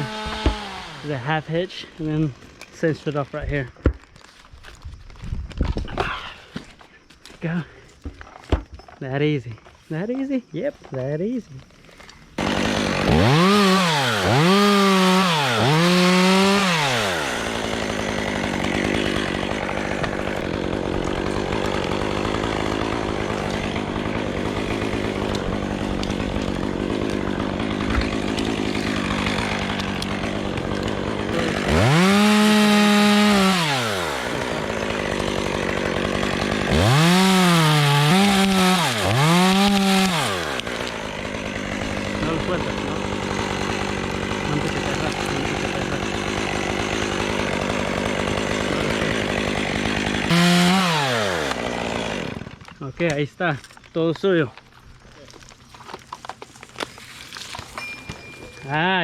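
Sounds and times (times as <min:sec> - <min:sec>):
chainsaw revving and idling: 0:00.0 - 0:03.0, 0:12.3 - 0:53.9.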